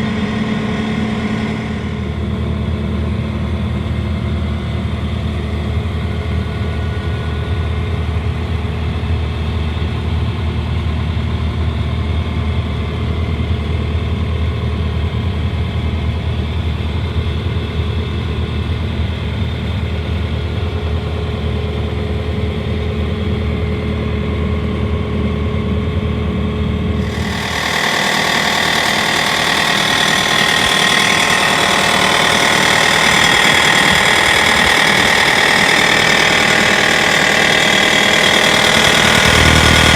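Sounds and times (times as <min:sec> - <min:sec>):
diesel engine running: 0:00.0 - 0:09.2, 0:26.8 - 0:39.9.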